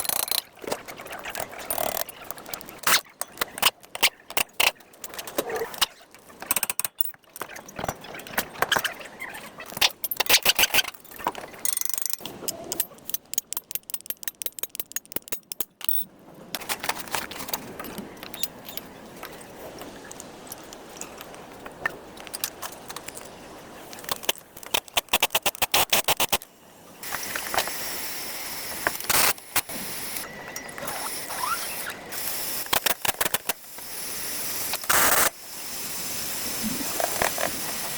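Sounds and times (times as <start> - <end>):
ratchet clicking: 0.0 - 0.5, 11.7 - 16.0
metal tool clicks and knocks: 6.4 - 8.0, 9.8 - 16.1.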